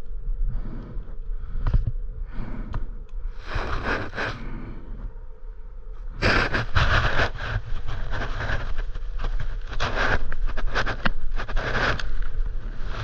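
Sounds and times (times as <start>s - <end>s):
rubber grips rubbing and scraping: 6.2s - 13.0s.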